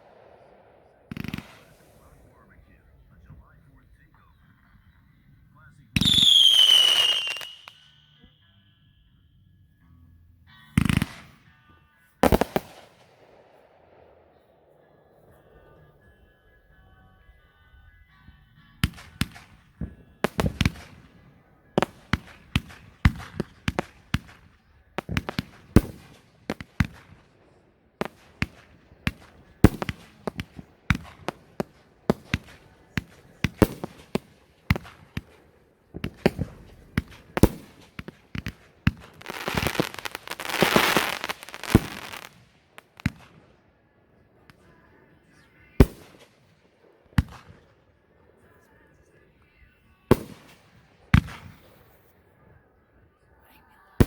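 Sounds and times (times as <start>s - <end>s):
fireworks crackle and hiss: 0.0s - 4.3s, 5.9s - 8.0s, 12.2s - 13.1s, 21.8s - 27.3s, 28.0s - 43.4s
fireworks bangs: 0.0s - 4.7s, 5.6s - 8.5s, 12.2s - 16.2s, 18.8s - 43.6s, 44.3s - 47.8s, 49.5s - 52.2s.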